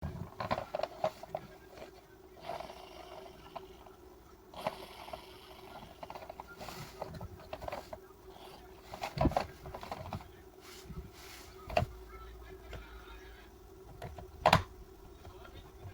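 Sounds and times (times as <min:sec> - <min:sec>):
plastic toy clicks and scrapes: 0:00.2 - 0:03.9, 0:04.5 - 0:10.2.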